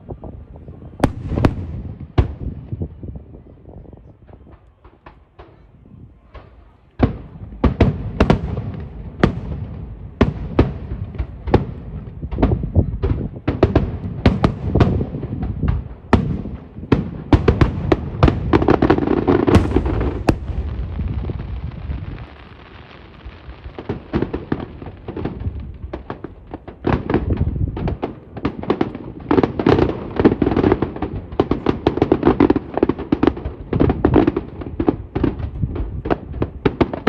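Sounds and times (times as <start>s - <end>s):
fireworks bangs: 0.1s - 37.0s
low rumbling: 17.7s - 22.6s.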